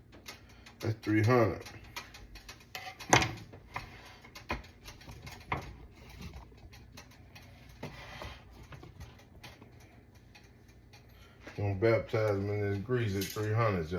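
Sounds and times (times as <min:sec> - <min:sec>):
sharp knocks and clicks: 0:01.6 - 0:11.1.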